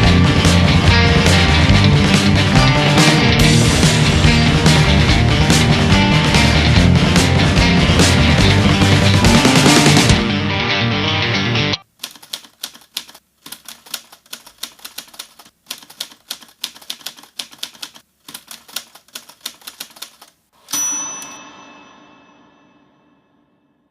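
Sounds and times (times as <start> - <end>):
rock band music: 0.0 - 11.8
typewriter key strikes: 12.0 - 21.4
typewriter carriage bell ding: 20.6 - 22.7.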